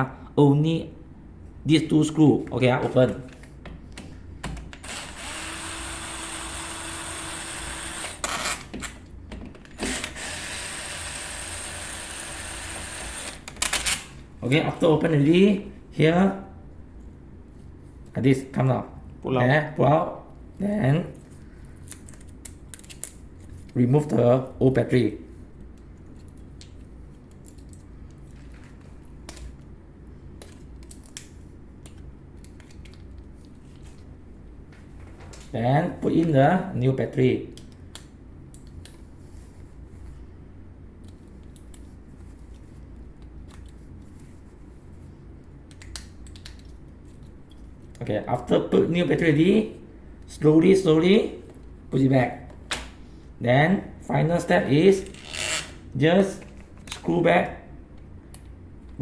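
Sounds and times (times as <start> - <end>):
steady low hum: 0.0 - 59.0
electric screwdriver whirring: 4.8 - 8.6, 9.8 - 13.5.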